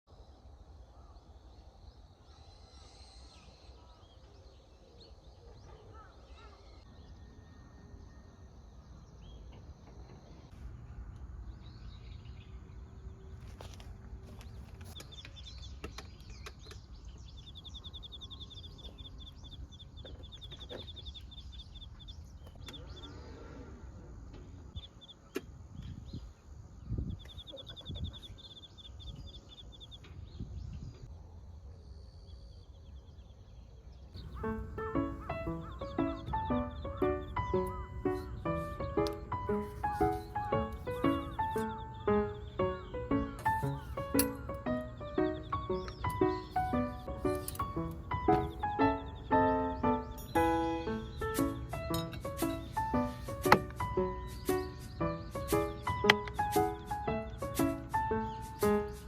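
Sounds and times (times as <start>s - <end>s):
birds chirping: 0.1s - 31.1s, 31.9s - 59.0s
wind rumbling on microphone: 23.7s - 31.3s, 34.1s - 59.0s
rapid high bird trill: 34.2s - 59.0s
knocks: 53.3s - 53.9s.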